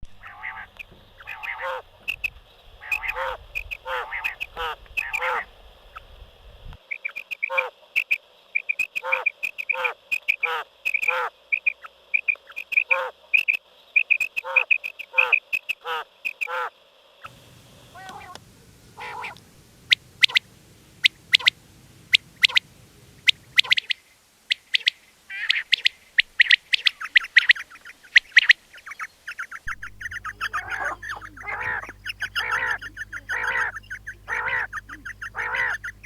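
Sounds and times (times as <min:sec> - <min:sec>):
quails calling: 0:00.1 - 0:05.5, 0:17.3 - 0:36.0
low rumble: 0:29.7 - 0:36.0.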